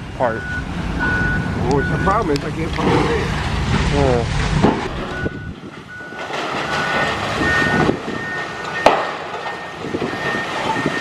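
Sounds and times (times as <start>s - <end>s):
reversing alarms beeping: 0.4s - 2.3s, 5.0s - 11.0s
debris crunching and clanking: 2.6s - 11.0s.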